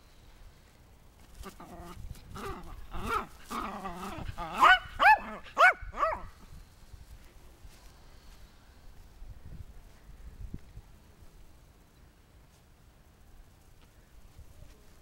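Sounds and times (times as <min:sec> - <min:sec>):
small dog growling: 0:01.4 - 0:06.3
dog yipping: 0:02.4 - 0:06.3.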